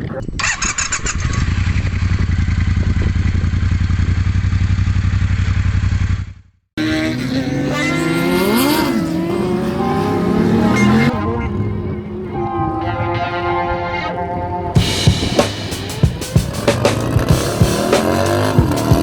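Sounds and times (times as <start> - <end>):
motorcycle engine running: 1.0 - 11.1, 14.8 - 19.0
engines revving: 6.8 - 19.0.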